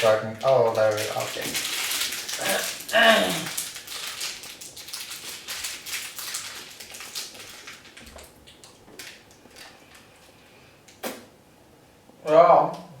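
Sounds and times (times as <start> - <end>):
plastic wrapper crinkling: 0.0 - 10.1.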